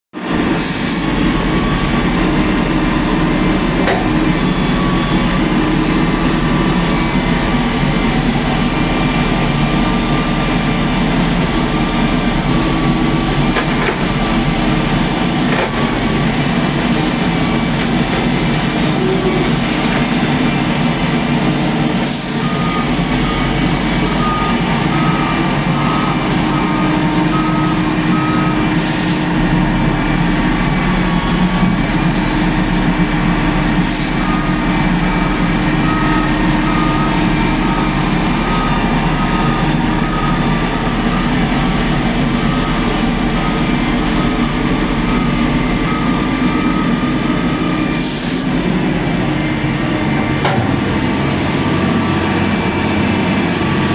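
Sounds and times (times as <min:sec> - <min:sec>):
heavy engine running: 0:00.2 - 0:53.9
back-up alarm beeping: 0:22.4 - 0:29.7, 0:34.0 - 0:48.4.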